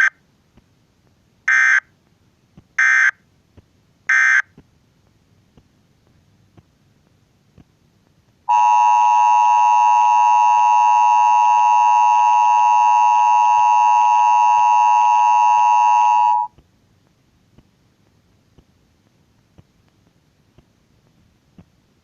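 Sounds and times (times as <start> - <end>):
two-tone electronic alert signal: 8.5 - 16.5.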